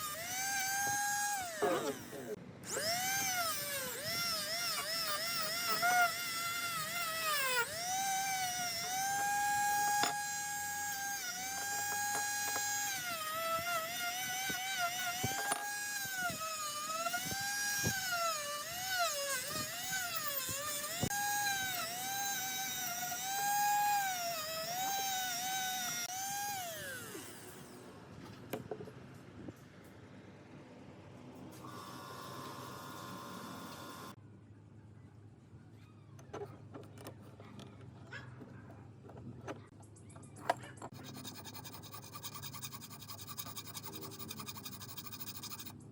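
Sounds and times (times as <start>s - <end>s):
electric rotary tool whining: 0.0s - 27.8s, 31.6s - 34.2s.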